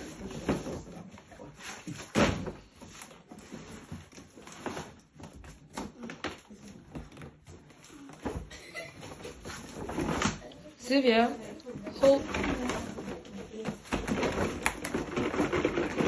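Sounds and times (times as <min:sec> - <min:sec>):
packaging rustling and knocking: 0:11.9 - 0:16.0.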